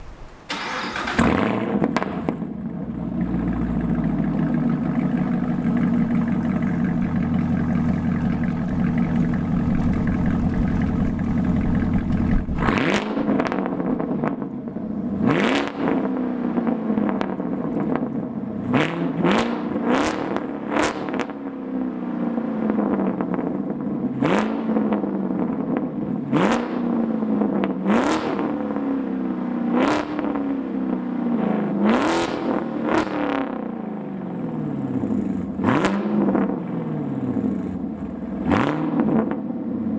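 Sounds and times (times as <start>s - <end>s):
car engine idling: 0.0s - 1.4s, 2.1s - 15.2s, 36.4s - 38.5s
exhaust crackles: 0.0s - 15.8s
engine revving: 0.0s - 17.4s, 18.6s - 21.6s, 24.1s - 25.1s, 26.3s - 29.0s, 29.7s - 30.7s, 31.7s - 33.8s, 35.0s - 39.5s.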